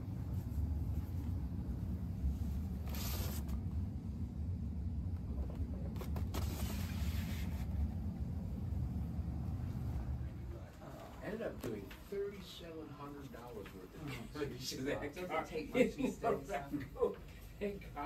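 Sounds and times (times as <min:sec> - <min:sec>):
short hissing noises: 0:02.7 - 0:03.7.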